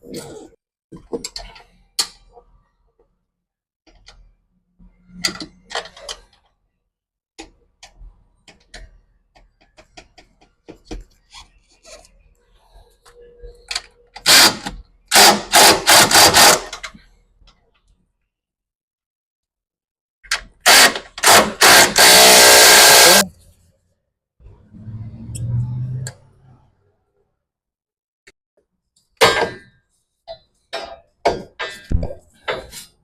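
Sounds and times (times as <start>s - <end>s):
handheld power tool bursts: 14.2s - 16.8s, 20.6s - 23.2s.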